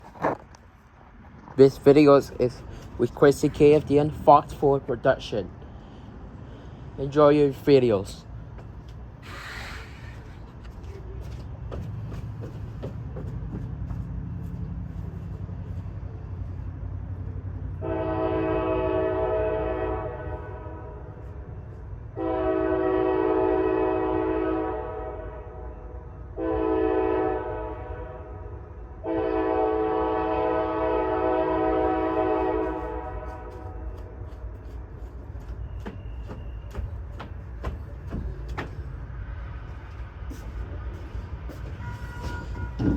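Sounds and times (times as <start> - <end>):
train rumbling: 0.0 - 42.9
locomotive air horn: 17.8 - 21.5, 22.1 - 34.2, 41.7 - 42.9.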